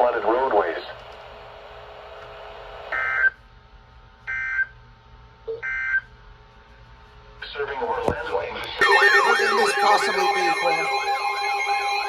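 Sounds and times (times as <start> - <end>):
faint radio hiss and hum: 0.0 - 4.3, 6.2 - 10.9
digital data bursts: 8.8 - 12.0.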